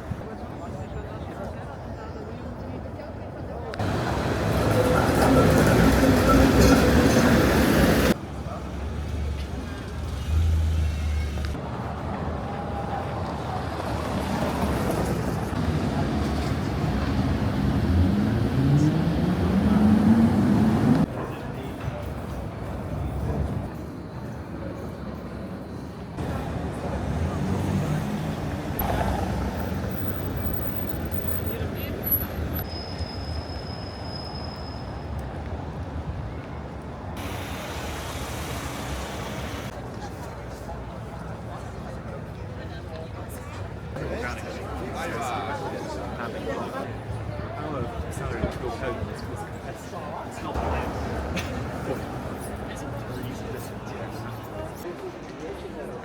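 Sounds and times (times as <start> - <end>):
vehicle rumble in traffic: 3.8 - 21.2, 25.3 - 45.1.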